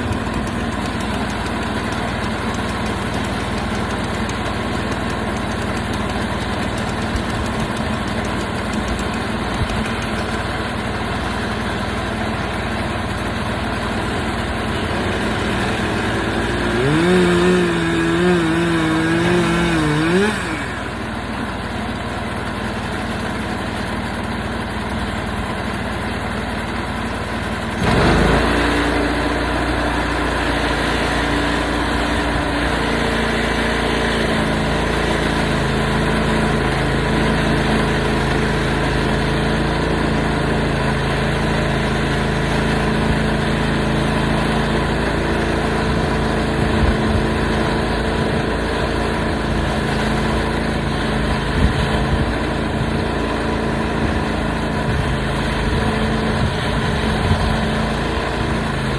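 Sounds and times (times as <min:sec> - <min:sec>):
sawmill engine running: 0:00.0 - 0:58.9.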